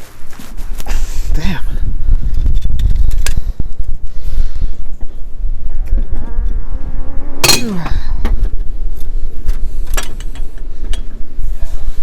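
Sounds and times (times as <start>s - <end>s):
steady low rumble: 1.4s - 12.0s
loud metal clank: 7.4s - 8.0s.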